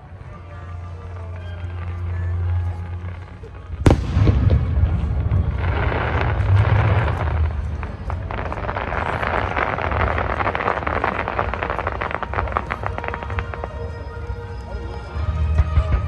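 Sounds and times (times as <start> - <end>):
fireworks crackling: 0.0 - 16.0
low rumble of booms: 3.8 - 12.3.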